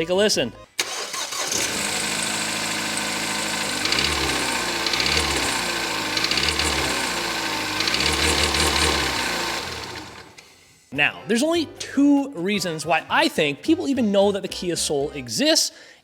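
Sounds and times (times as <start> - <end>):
car engine idling and revving: 1.1 - 10.4.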